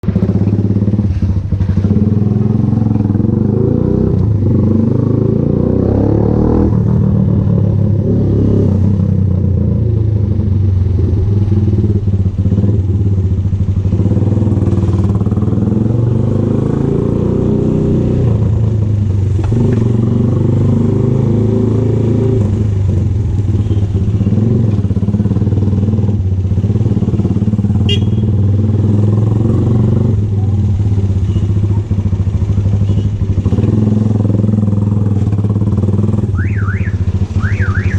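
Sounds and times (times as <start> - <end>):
motorcycle engine running: 0.0 - 37.9.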